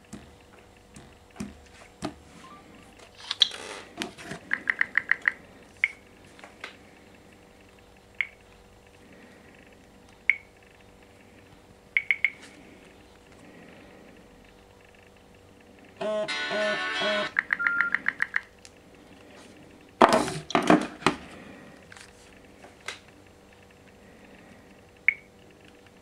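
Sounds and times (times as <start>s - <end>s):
phone clicks and taps: 12.0s - 12.5s, 17.3s - 18.5s
short high electronic beeps: 16.3s - 18.0s.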